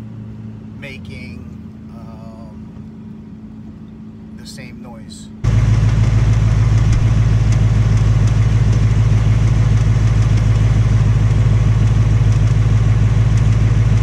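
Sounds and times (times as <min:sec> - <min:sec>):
car engine idling: 0:00.0 - 0:14.0
engine tapping: 0:05.4 - 0:14.0.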